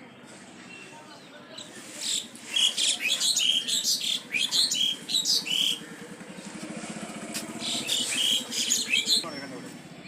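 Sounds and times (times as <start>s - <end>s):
small birds chirping: 0.2s - 10.0s
low engine hum: 4.3s - 10.0s.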